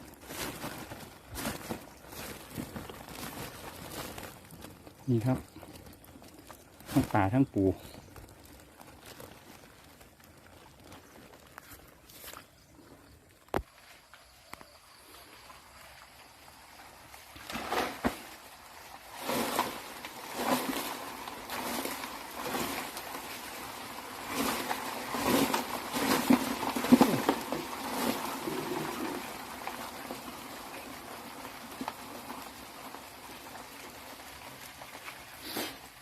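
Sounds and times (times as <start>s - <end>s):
splashing and knocking in water: 0.0s - 7.4s, 15.6s - 33.8s
light hiss: 35.4s - 36.0s.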